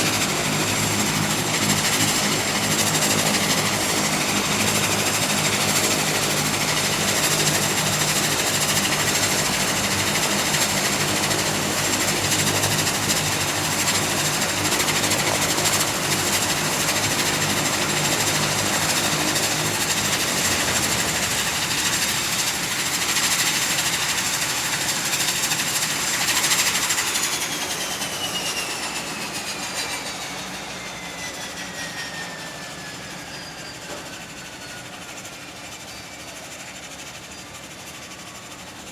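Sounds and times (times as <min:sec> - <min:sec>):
airplane engines roaring at takeoff: 0:00.0 - 0:38.9.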